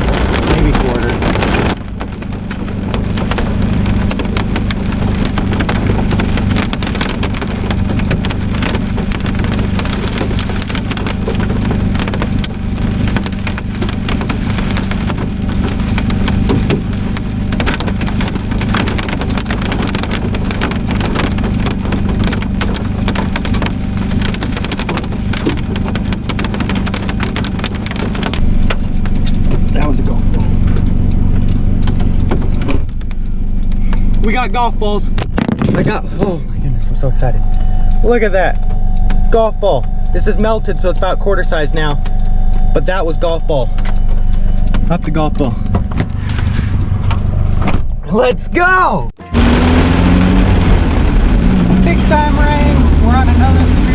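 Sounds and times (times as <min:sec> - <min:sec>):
hail pelting vehicle roof: 0:00.0 - 0:47.1, 0:48.1 - 0:53.9
steady low hum: 0:28.3 - 0:53.9.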